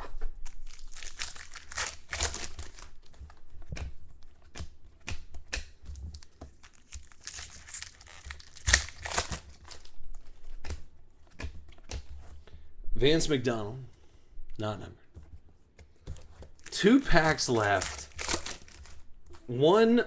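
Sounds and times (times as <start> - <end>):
foil wrapper crinkling and tearing: 0.4 - 3.1, 6.1 - 9.9, 16.6 - 19.0.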